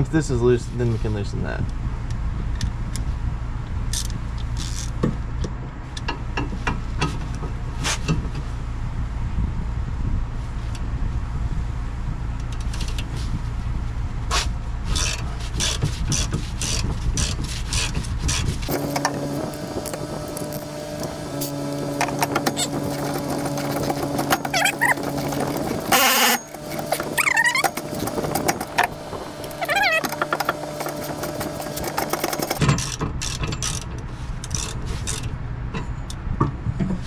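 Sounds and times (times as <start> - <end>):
fan humming: 0.0 - 36.4
ratchet wrench clicking: 3.9 - 5.0, 15.0 - 18.4, 30.8 - 35.3
steady whir with tones: 9.3 - 35.4.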